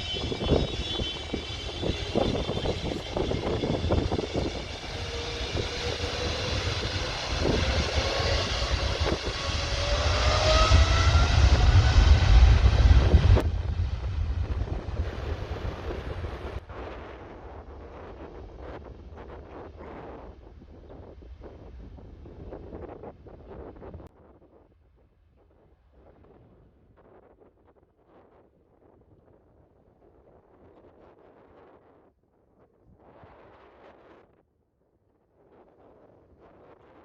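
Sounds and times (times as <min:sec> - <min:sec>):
jet engines whining: 0:00.0 - 0:18.6
wind buffeting microphone: 0:00.0 - 0:24.7.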